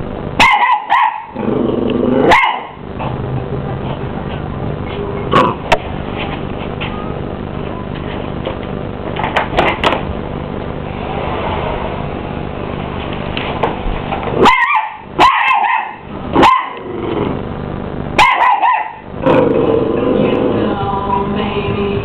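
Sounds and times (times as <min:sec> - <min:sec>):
dog barking: 0:00.4 - 0:01.4, 0:02.2 - 0:02.8, 0:14.4 - 0:16.8, 0:18.2 - 0:19.0
vacuum cleaner drone: 0:01.3 - 0:15.2, 0:19.0 - 0:22.0.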